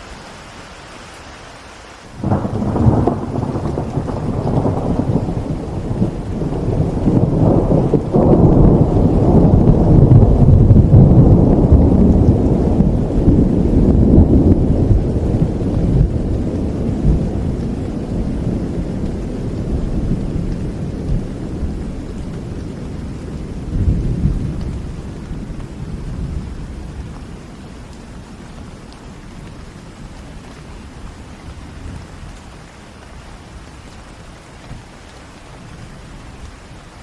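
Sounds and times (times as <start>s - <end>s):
steady rain: 0.0s - 37.0s
rolling thunder: 2.2s - 32.4s.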